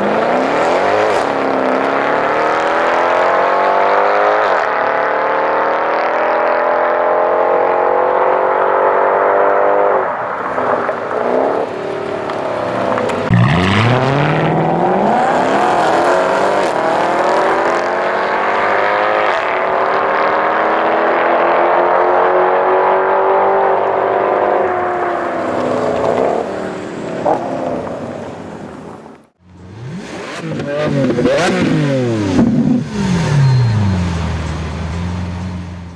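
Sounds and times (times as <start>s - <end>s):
car exhaust accelerating hard: 10.7s - 18.2s, 29.4s - 35.9s.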